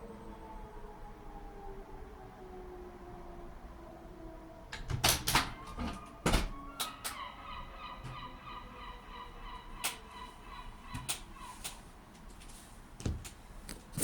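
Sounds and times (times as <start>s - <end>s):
siren winding down: 5.4s - 11.6s.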